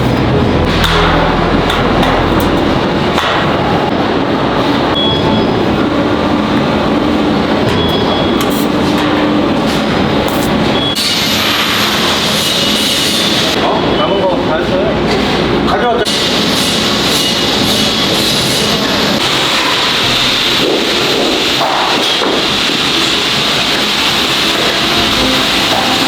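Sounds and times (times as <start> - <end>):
steady machine noise: 0.0 - 4.9, 16.4 - 26.0.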